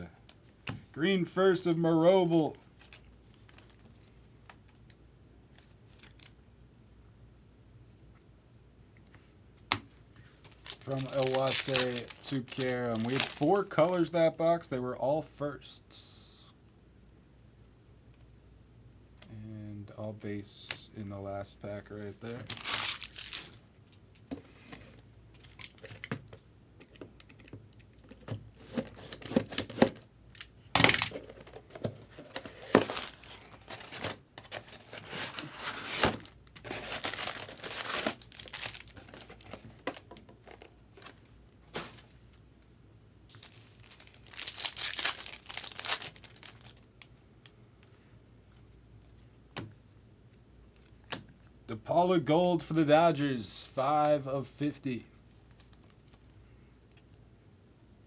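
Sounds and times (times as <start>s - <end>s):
wrapper tearing and crinkling: 10.5s - 14.1s, 22.4s - 23.6s, 32.6s - 39.7s, 43.4s - 46.9s.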